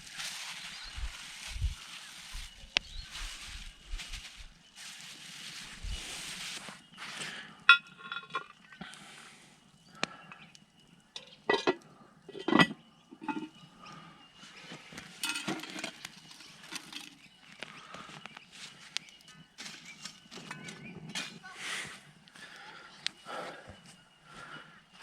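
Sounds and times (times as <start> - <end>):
rustle: 0.0 - 7.3
metal cookware clinking: 7.7 - 8.5, 11.2 - 13.5, 15.2 - 16.0.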